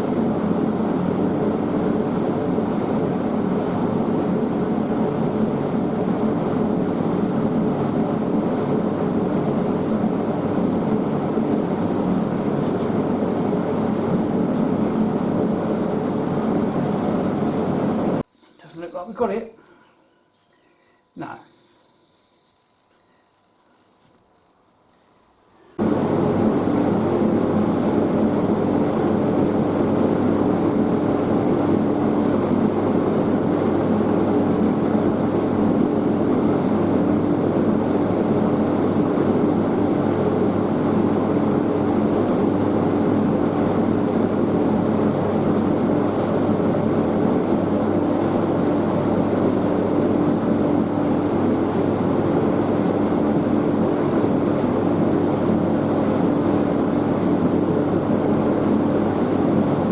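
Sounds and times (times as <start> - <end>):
furnace burner roaring: 0.0 - 20.2, 25.2 - 59.9.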